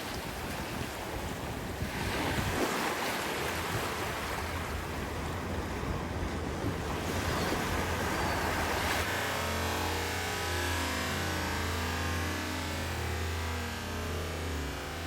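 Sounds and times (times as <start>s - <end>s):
wind buffeting microphone: 0.0s - 9.1s.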